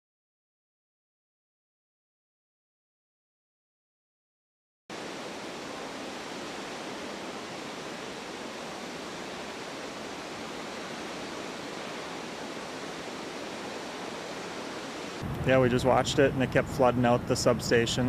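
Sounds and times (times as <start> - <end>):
river in flood rushing: 4.9 - 18.0.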